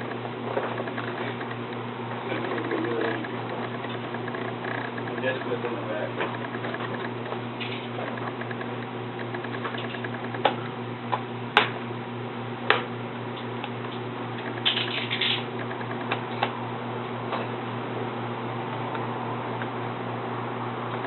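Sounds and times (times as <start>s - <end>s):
rattly clicking: 0.0s - 1.6s, 2.3s - 5.7s
steady low hum: 0.0s - 21.0s.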